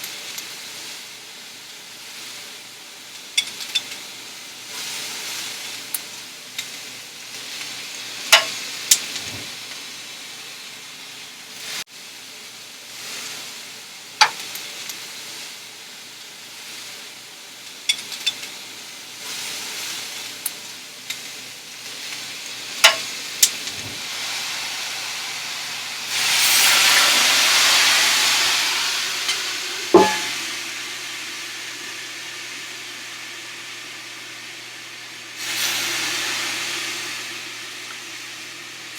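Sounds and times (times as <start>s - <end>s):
meat sizzling in a skillet: 0.0s - 38.9s
utensil clinks and knocks: 30.0s - 30.3s.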